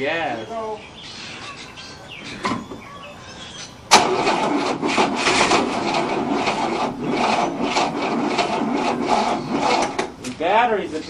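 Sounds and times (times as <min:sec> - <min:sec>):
starter motor cranking engine: 0:03.9 - 0:10.2.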